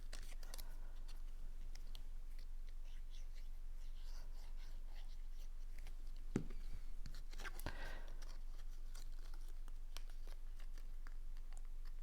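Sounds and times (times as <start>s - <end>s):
soft taps and clicks: 6.3s - 6.7s.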